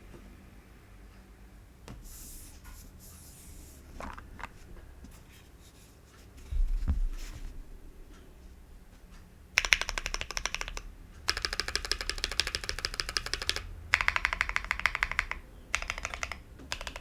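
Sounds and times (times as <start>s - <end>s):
low thump: 6.5s - 7.7s
keyboard clicks: 9.6s - 17.0s.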